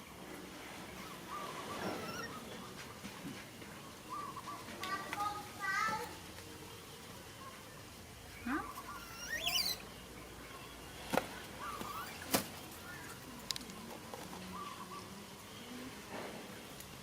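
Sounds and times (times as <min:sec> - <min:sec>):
monkey squeaking: 0:01.8 - 0:02.4, 0:08.6 - 0:09.8.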